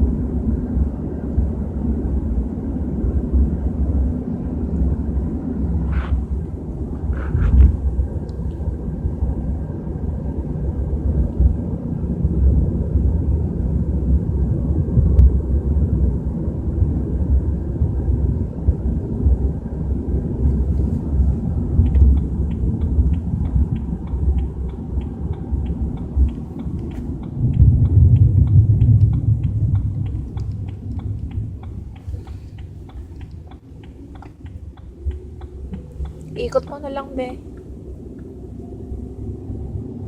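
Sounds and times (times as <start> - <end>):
low rumbling in car cabin: 0.0 - 40.0
light evenly spaced ticks: 20.4 - 38.3.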